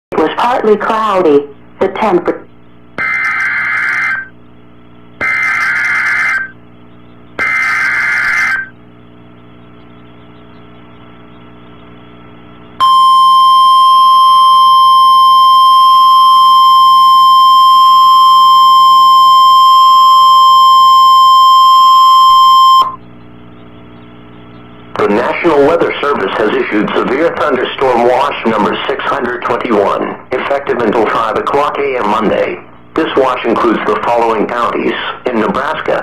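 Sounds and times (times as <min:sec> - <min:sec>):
steady warning alarm tone: 0:02.5 - 0:27.0
digital header bursts: 0:02.6 - 0:04.4, 0:05.2 - 0:11.2.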